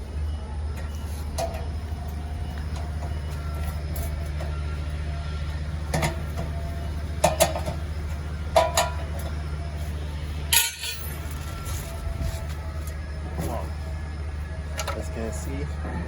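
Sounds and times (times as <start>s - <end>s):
steady low hum: 0.0s - 16.0s
spanner clinking on metal: 10.5s - 11.2s.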